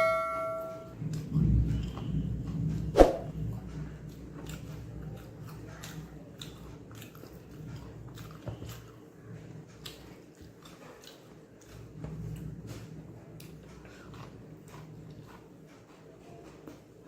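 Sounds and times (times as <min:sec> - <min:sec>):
person chewing food: 0:04.1 - 0:17.0.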